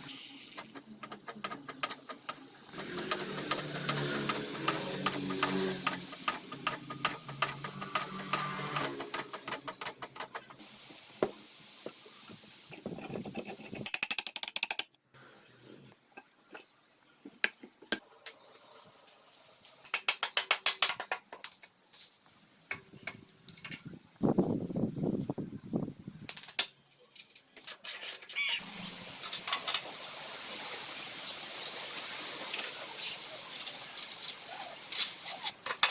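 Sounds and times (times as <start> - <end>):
ratchet clicking: 0.6 - 10.6
small motorized tool running: 2.8 - 6.1.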